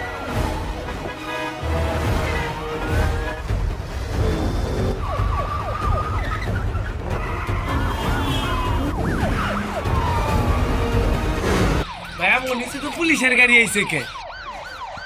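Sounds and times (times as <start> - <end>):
police siren wailing: 0.0 - 3.5, 4.2 - 15.0.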